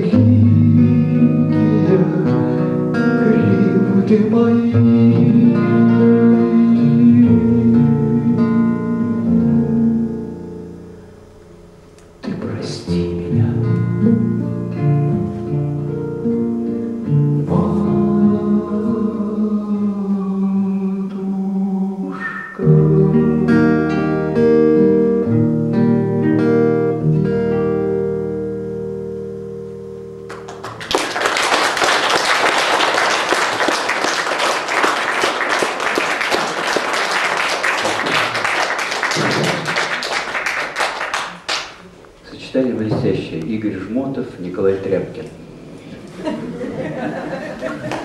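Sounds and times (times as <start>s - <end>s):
acoustic guitar playing: 0.0s - 31.3s
audience applauding: 30.3s - 41.9s, 46.9s - 48.0s.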